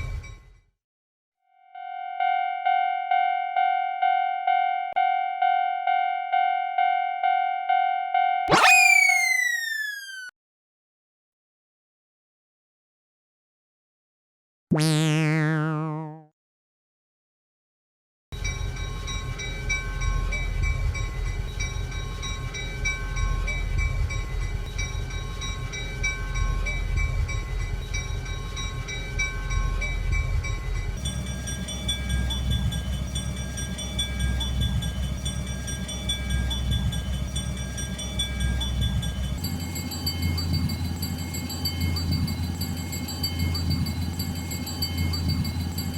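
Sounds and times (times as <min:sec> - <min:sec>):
crossing alarm bells ringing: 0:18.4 - 0:45.9
train rumbling past: 0:18.5 - 0:45.9.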